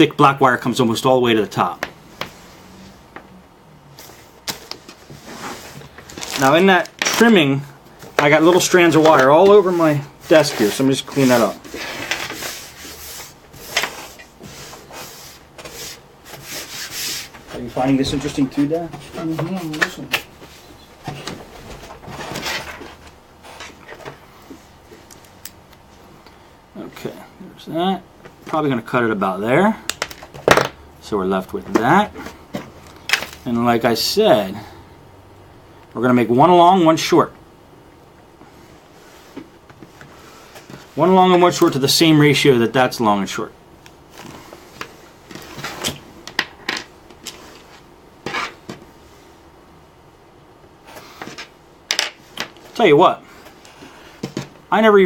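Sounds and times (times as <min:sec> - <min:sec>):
scraping rustle: 0:08.2 - 0:24.2.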